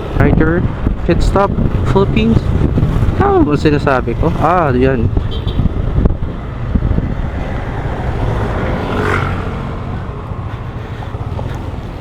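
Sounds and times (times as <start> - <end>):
wind on microphone: 0.0 - 12.0
vehicle passing: 1.5 - 12.0
scooter engine: 5.2 - 12.0.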